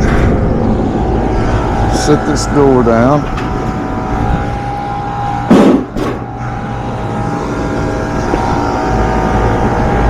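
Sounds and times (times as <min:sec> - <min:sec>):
hvac machinery hum: 0:00.0 - 0:10.0
metal panel clanking: 0:03.0 - 0:04.6, 0:05.5 - 0:06.4.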